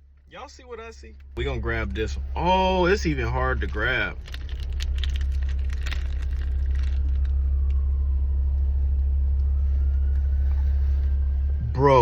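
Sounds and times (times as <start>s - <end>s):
car engine idling: 0.0s - 12.0s
crackly handling noises: 3.6s - 7.9s.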